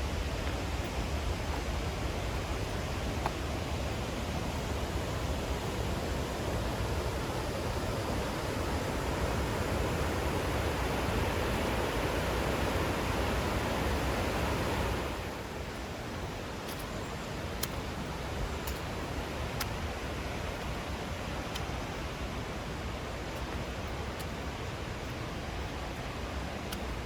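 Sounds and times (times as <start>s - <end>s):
faint sharp ticks: 18.6s - 18.9s, 19.6s - 19.8s, 26.7s - 27.0s.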